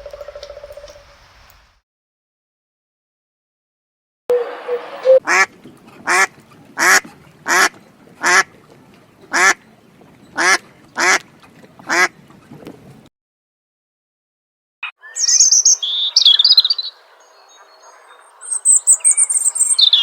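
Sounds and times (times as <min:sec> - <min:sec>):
duck quacking: 0:04.4 - 0:08.5, 0:09.3 - 0:09.6, 0:10.4 - 0:11.2, 0:11.9 - 0:12.1.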